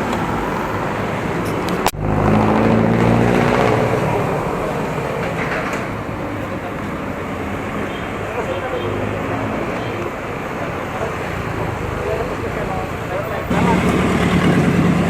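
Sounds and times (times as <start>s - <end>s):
traffic noise: 0.0s - 15.0s
vehicle engine running: 11.4s - 15.0s.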